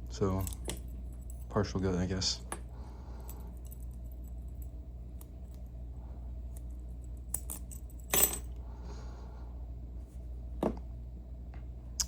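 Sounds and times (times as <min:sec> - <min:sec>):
steady low hum: 0:00.0 - 0:12.0
light metallic clinks: 0:06.5 - 0:08.6.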